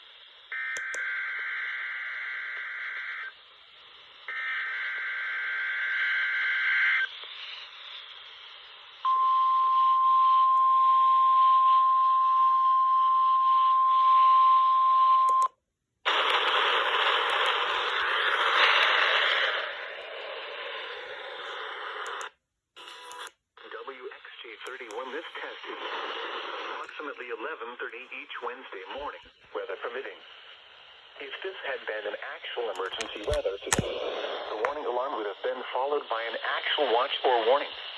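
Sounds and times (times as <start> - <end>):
radio static hiss: 0.0 - 9.1, 16.1 - 22.4, 23.6 - 37.9.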